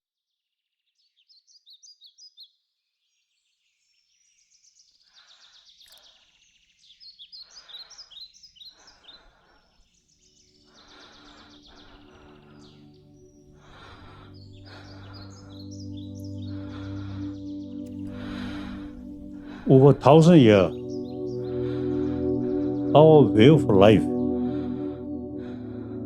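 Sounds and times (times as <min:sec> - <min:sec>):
songbirds chirping and singing: 0:01.0 - 0:26.0
low sustained music tones: 0:09.8 - 0:26.0.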